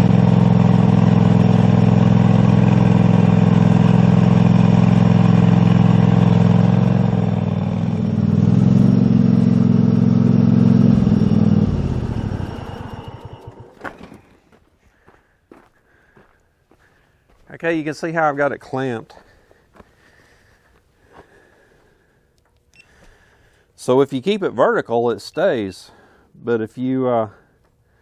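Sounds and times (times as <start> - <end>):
atv engine running: 0.0 - 14.6.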